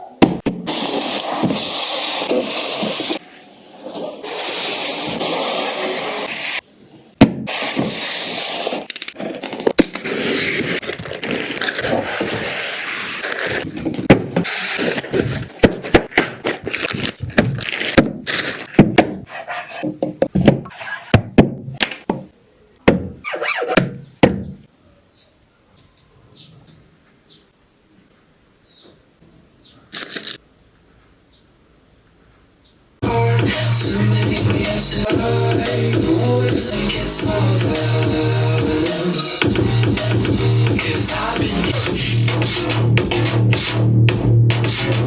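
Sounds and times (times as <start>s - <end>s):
packaging rustling and scraping: 7.5s - 19.9s.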